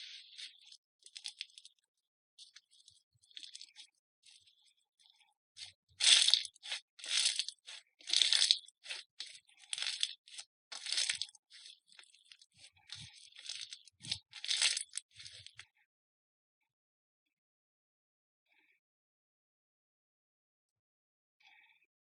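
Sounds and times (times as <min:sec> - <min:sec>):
slime crackling when squeezed: 0:06.0 - 0:11.8, 0:13.4 - 0:15.4.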